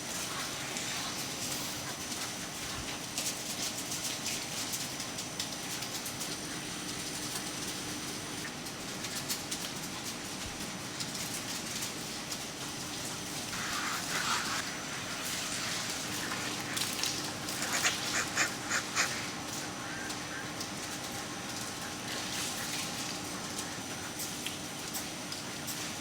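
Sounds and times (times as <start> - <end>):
steady background hum: 0.0 - 26.0
ducks quacking: 15.8 - 21.2.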